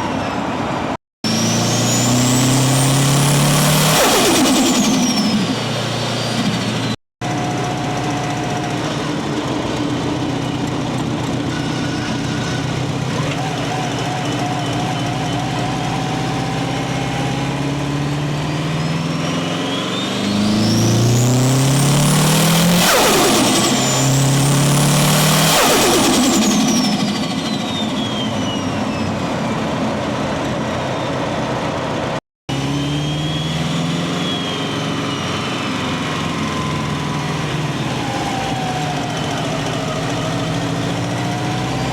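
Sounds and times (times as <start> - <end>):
turbo whine: 1.2 - 29.7
car engine revving: 1.2 - 41.9.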